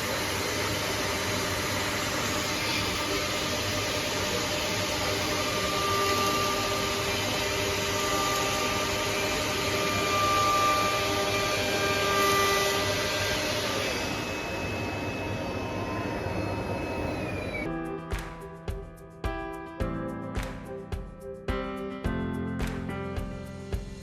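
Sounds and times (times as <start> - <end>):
machine whining tones: 0.0 - 17.7.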